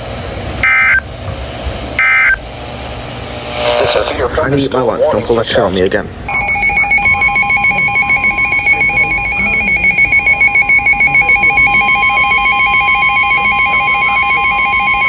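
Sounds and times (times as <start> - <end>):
emergency alert tone: 0.6 - 1.1, 2.0 - 2.5, 3.4 - 5.6, 6.3 - 15.0.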